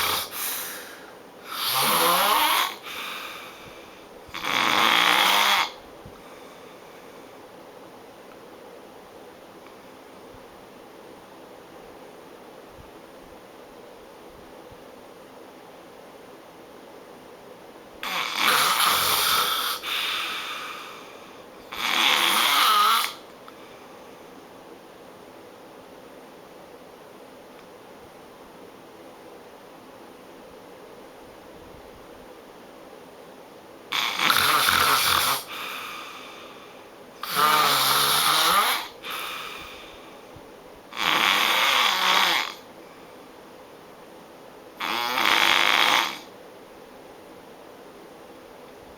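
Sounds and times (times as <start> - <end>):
person snoring loudly: 0.0 - 3.6, 4.3 - 5.8, 18.0 - 21.1, 21.7 - 23.2, 33.9 - 36.4, 37.2 - 39.8, 40.9 - 42.7, 44.8 - 46.3
weak breath: 39.0 - 40.4.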